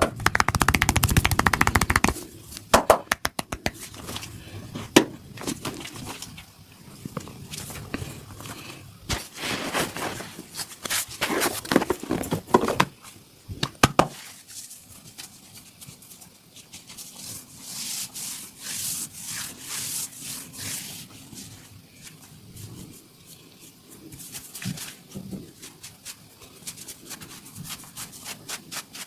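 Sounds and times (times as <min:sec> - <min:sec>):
sharp snaps: 0:00.0 - 0:03.8
hands rubbing skin and clothing: 0:00.2 - 0:04.3, 0:14.1 - 0:29.0.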